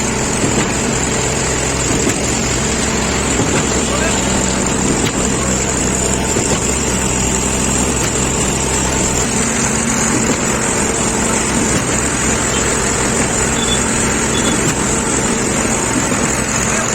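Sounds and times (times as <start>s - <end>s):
concrete pumping machine running: 0.0s - 16.9s.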